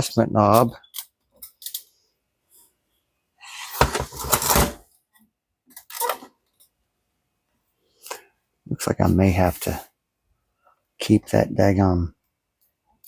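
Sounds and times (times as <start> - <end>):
clattering and scraping: 3.7 - 4.8.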